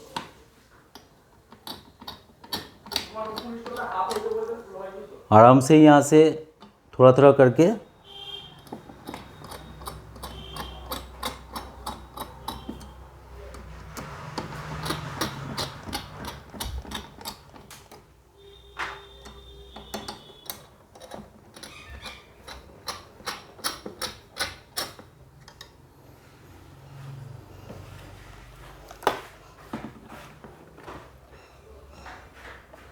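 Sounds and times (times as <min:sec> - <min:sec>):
screwdriver clicks and knocks: 0:01.0 - 0:04.4, 0:08.6 - 0:18.0, 0:18.8 - 0:25.7.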